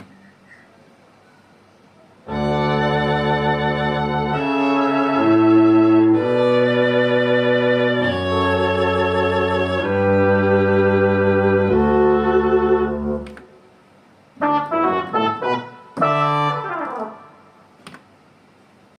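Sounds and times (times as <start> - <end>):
synthesizer brass chords and notes: 2.3 - 13.4, 14.4 - 17.7.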